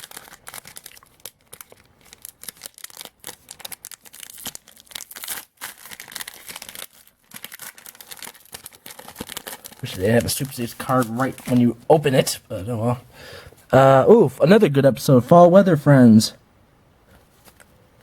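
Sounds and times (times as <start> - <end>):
wrapper tearing and crinkling: 0.0 - 11.8.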